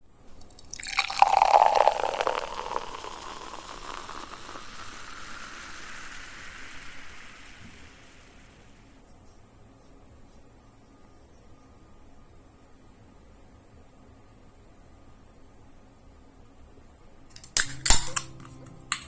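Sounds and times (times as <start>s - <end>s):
beer pouring into a glass: 0.4s - 8.4s
beer foam fizzing: 0.4s - 8.8s.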